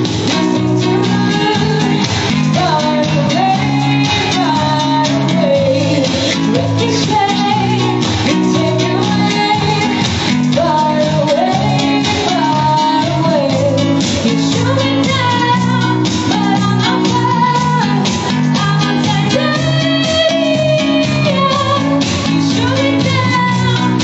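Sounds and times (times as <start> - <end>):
guitars playing: 0.0 - 24.0.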